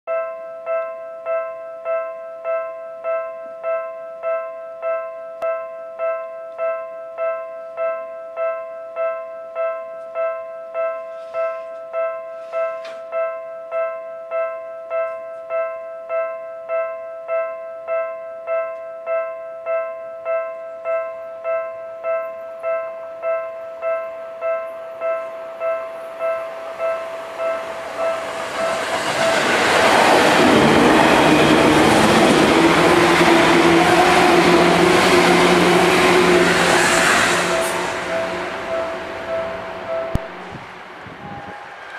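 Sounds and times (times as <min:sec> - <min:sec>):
level crossing bell dinging: 0:00.1 - 0:29.4
pulsing crossing alarm tone: 0:20.2 - 0:41.9
train wheels rushing on rail: 0:27.4 - 0:41.9
train motor hum: 0:27.6 - 0:41.9.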